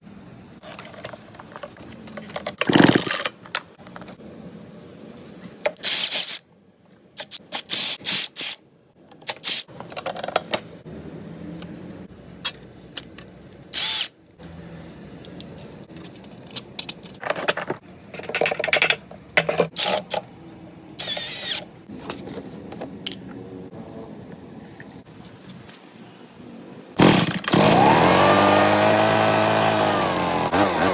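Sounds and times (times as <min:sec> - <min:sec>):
cordless drill whirring in bursts: 0:27.0 - 0:30.9.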